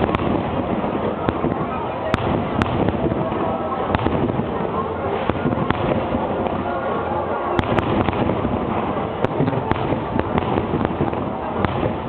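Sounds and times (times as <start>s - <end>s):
sharp cracks: 0.0s - 4.4s, 7.6s - 12.0s
fireworks bursting: 0.0s - 12.0s.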